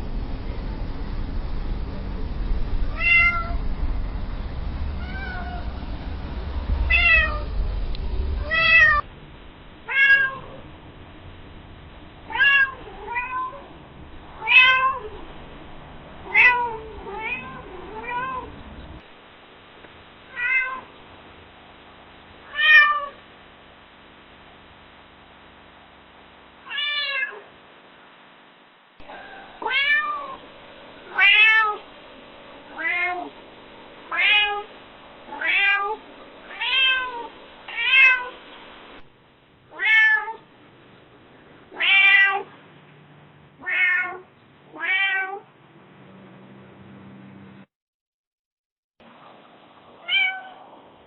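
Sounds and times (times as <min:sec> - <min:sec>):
cat meowing: 0:02.9 - 0:03.6, 0:05.0 - 0:05.7, 0:06.9 - 0:07.5, 0:08.4 - 0:09.0, 0:09.9 - 0:10.6, 0:12.3 - 0:13.7, 0:14.4 - 0:15.2, 0:16.2 - 0:18.5, 0:20.3 - 0:20.9, 0:22.5 - 0:23.2, 0:26.7 - 0:27.5, 0:29.0 - 0:30.4, 0:31.0 - 0:31.8, 0:32.7 - 0:33.3, 0:34.1 - 0:34.7, 0:35.3 - 0:38.3, 0:39.7 - 0:40.5, 0:41.7 - 0:42.5, 0:43.6 - 0:45.5, 0:50.0 - 0:50.7.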